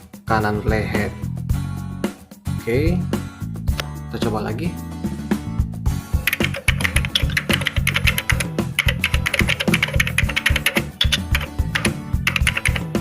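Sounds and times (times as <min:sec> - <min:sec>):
background music: 0:00.0 - 0:13.0
keyboard key clicks: 0:06.3 - 0:12.9.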